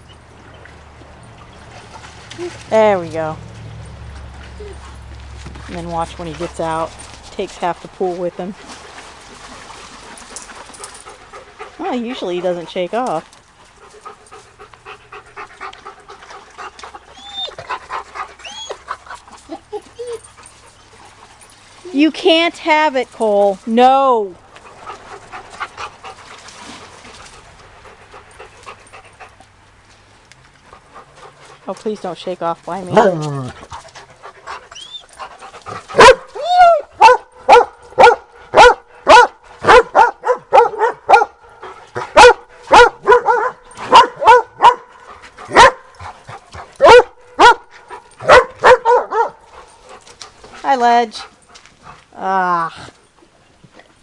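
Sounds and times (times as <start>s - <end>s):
dog panting: 10.1s - 21.6s, 24.6s - 29.5s, 30.6s - 32.1s, 32.9s - 36.2s, 41.5s - 52.1s
dog yelping: 17.1s - 17.6s, 18.4s - 18.8s, 36.0s - 41.3s, 42.1s - 44.9s, 46.8s - 49.4s
dog whining: 17.1s - 17.7s, 18.4s - 18.9s, 34.7s - 35.2s
dog barking: 36.0s - 36.3s, 37.0s - 41.4s, 42.1s - 44.9s, 45.5s - 45.8s, 46.8s - 49.4s.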